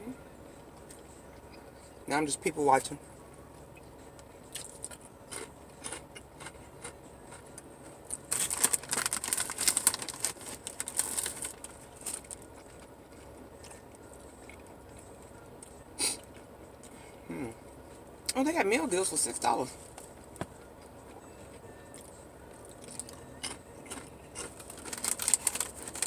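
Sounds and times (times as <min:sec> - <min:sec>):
crunchy crackling: 0:04.5 - 0:13.3, 0:21.9 - 0:26.0.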